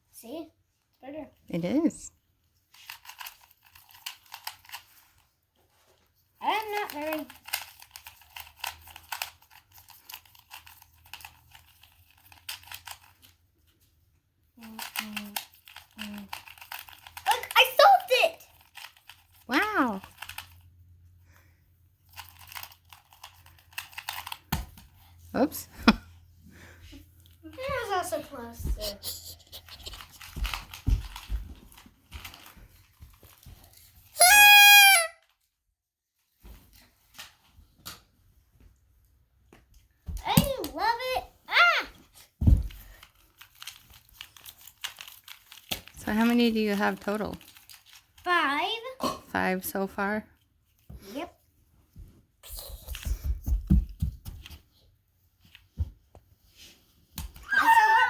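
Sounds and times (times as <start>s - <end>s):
speed cube clicking: 14.7s - 17.8s, 20.0s - 20.6s
handling rustling and knocks: 29.6s - 34.0s, 42.1s - 48.2s.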